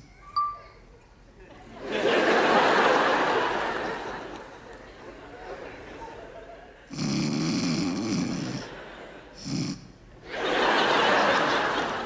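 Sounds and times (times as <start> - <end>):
person snoring: 6.9 - 8.7, 9.4 - 9.9.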